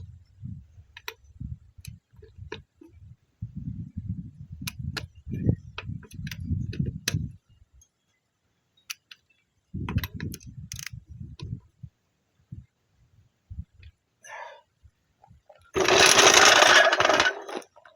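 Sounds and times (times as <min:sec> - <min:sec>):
hand tools rapid ticking: 0:15.8 - 0:17.6.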